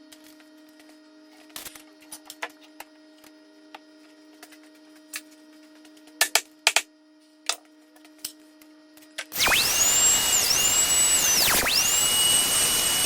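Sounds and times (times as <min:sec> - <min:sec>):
faint hum: 0:09.4 - 0:13.0.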